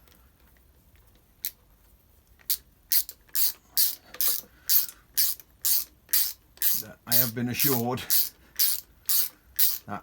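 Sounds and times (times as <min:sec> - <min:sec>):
ratchet wrench clicking: 0:02.5 - 0:09.9.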